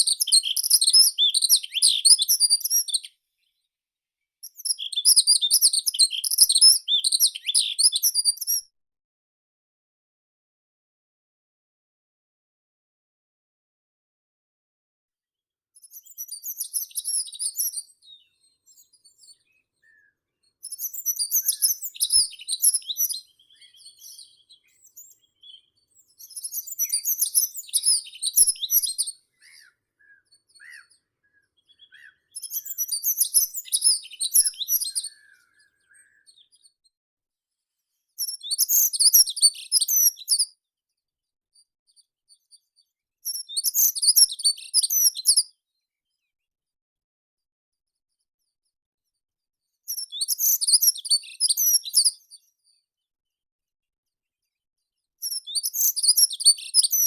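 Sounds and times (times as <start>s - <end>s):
songbird twittering song: 0.0s - 3.6s, 4.4s - 8.6s, 15.8s - 36.8s, 38.2s - 40.6s, 42.6s - 45.5s, 49.9s - 52.6s, 55.2s - 57.0s.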